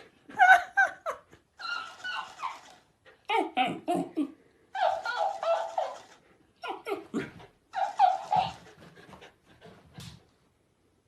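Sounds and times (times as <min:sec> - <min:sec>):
dog whining and yowling: 0:01.6 - 0:04.1, 0:04.8 - 0:08.6.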